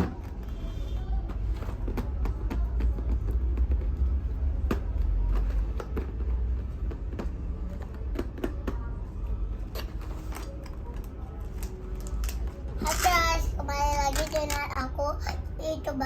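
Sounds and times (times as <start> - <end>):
child talking: 12.8 - 16.0.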